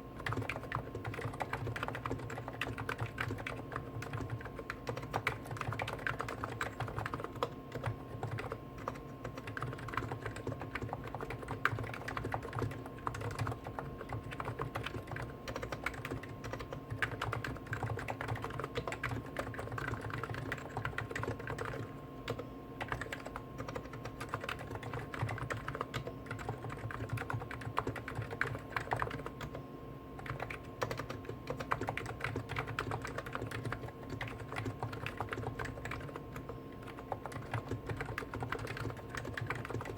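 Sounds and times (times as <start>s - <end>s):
fast keyboard typing clicks: 0.0s - 29.6s, 30.2s - 39.9s
faint steady hum: 0.0s - 39.9s.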